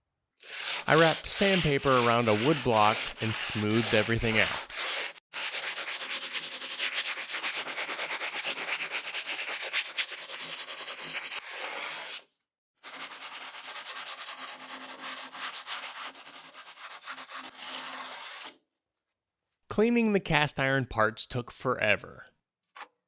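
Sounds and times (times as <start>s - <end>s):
sandpaper rasping on steel: 0.4s - 12.2s, 12.8s - 18.6s.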